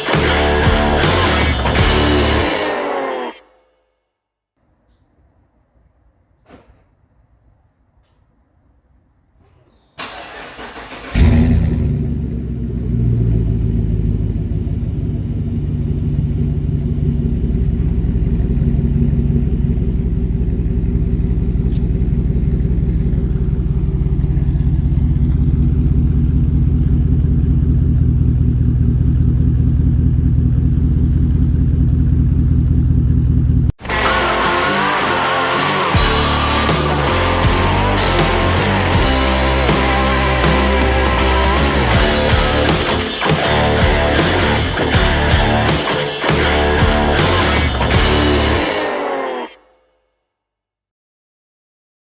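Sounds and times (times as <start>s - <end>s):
truck engine starting and idling: 0.0s - 2.6s, 10.0s - 48.9s.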